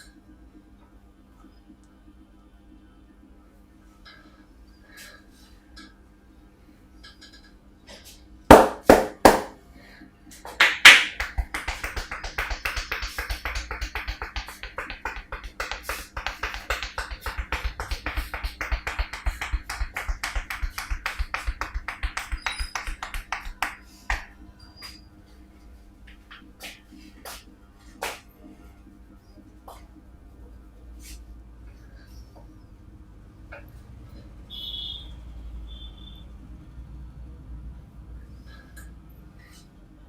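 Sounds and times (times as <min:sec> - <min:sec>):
fast patter of hand strokes: 0:10.5 - 0:24.3
hands slapping on a head: 0:10.5 - 0:24.3.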